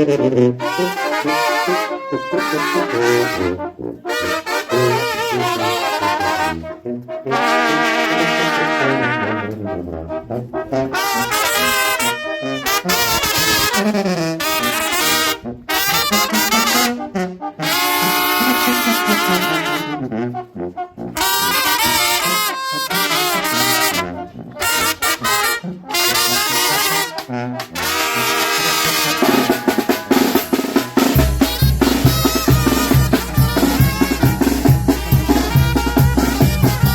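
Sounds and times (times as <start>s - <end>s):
brass band playing: 0.0s - 36.9s
trumpet and trombone melody: 0.0s - 36.9s
drums steady beat: 29.1s - 36.9s.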